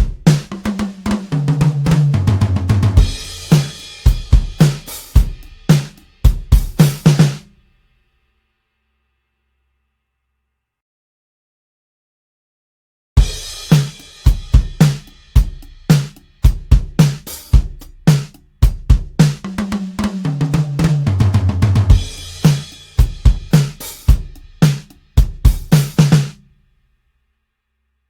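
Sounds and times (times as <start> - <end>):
drum kit groove: 0.0 - 7.6, 13.2 - 26.5
fast tom fill: 0.0 - 7.6, 13.2 - 26.4.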